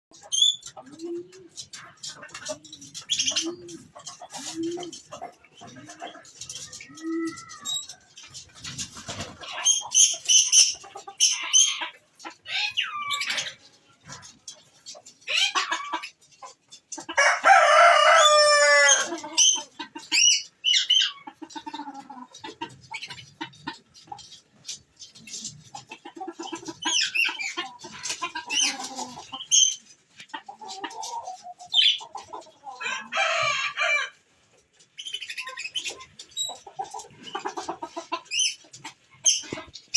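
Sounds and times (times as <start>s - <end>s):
chickens clucking: 0.1s - 39.9s
roosters crowing: 6.7s - 8.1s, 17.1s - 19.6s, 32.7s - 34.3s.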